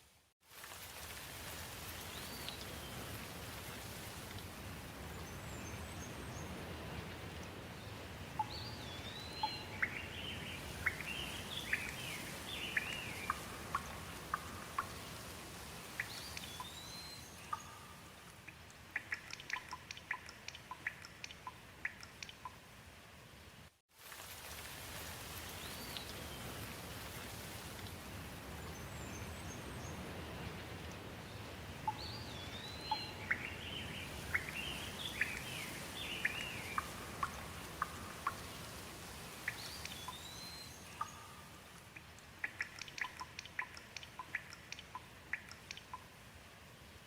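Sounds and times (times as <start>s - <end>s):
steady rain: 0.0s - 47.0s
water drips: 0.5s - 7.6s, 8.4s - 22.8s, 24.0s - 29.9s, 30.7s - 46.4s
birds calling: 8.4s - 15.1s, 31.8s - 38.6s.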